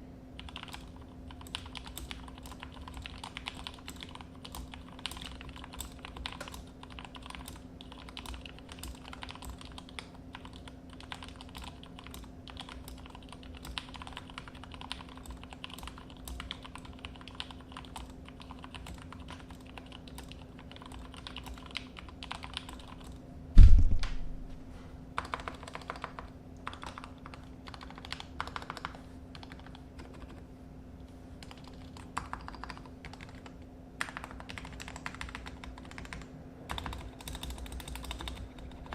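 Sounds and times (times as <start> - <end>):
faint steady hum: 0.0 - 38.9
keyboard typing: 0.4 - 23.2, 25.2 - 30.4, 31.4 - 38.9
loud low thump: 23.6 - 24.6.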